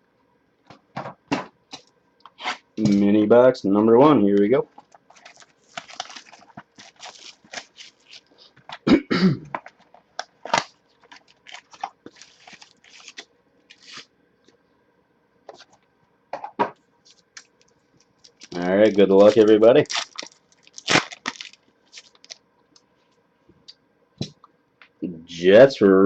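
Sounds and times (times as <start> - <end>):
packaging crinkling and tearing: 4.7 - 8.8, 9.6 - 14.1, 17.1 - 22.4
loud wrapper rip: 5.2 - 8.4, 18.3 - 22.4.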